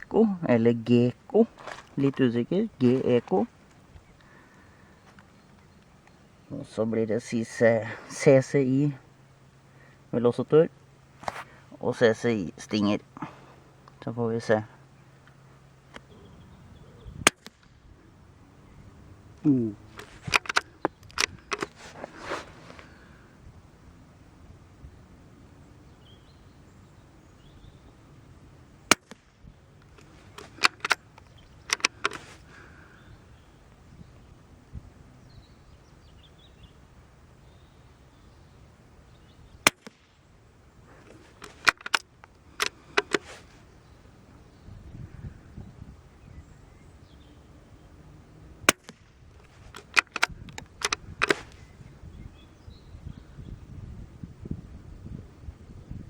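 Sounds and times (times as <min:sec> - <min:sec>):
rifle bolt clicks: 0:17.2 - 0:17.7, 0:20.0 - 0:21.9, 0:28.9 - 0:32.4, 0:39.6 - 0:40.1, 0:41.0 - 0:43.4, 0:48.7 - 0:51.6
rifle shot: 0:17.2 - 0:17.8, 0:28.9 - 0:29.4, 0:39.6 - 0:40.1, 0:48.7 - 0:49.2.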